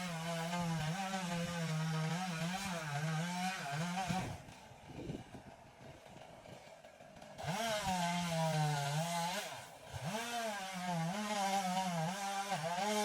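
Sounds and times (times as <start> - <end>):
chainsaw revving: 0.0 - 13.0.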